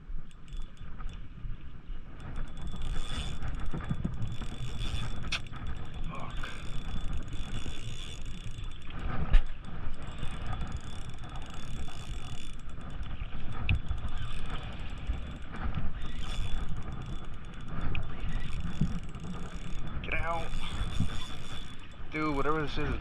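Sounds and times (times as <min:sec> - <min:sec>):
reel drag ticking: 0:00.0 - 0:23.0
fishing reel cranking: 0:00.2 - 0:23.0.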